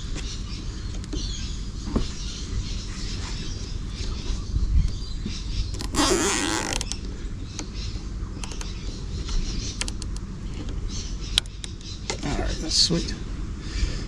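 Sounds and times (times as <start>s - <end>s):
cable tie ratcheting zip: 5.8s - 7.0s, 9.8s - 10.2s
light handling clicks: 5.8s - 7.8s, 8.4s - 12.2s.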